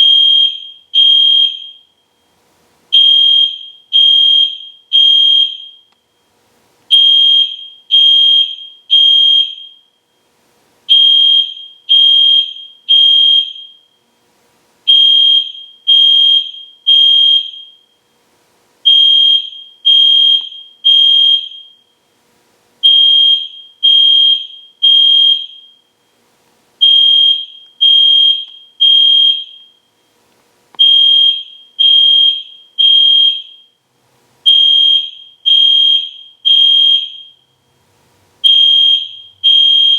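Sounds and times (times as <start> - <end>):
fire alarm horn beeping: 0.0 - 2.1, 2.9 - 5.9, 6.9 - 10.0, 10.9 - 14.0, 14.9 - 18.0, 18.8 - 22.0, 22.8 - 25.9, 26.8 - 30.0, 30.8 - 33.8, 34.4 - 37.5, 38.4 - 39.9.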